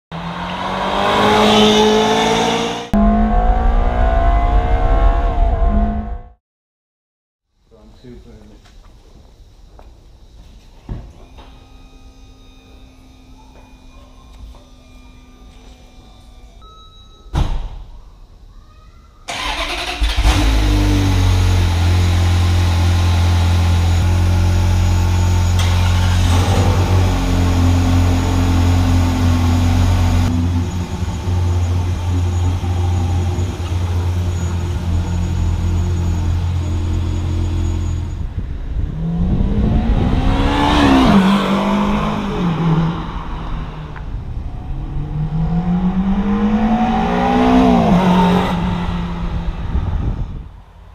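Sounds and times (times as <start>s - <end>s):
engine revving: 0.1s - 6.4s, 19.3s - 50.5s
car engine starting and idling: 19.3s - 39.5s.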